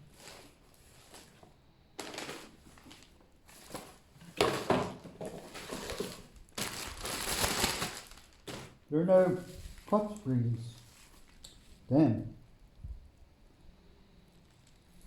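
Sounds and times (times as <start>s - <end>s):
packaging crinkling and rustling: 0.0s - 11.6s.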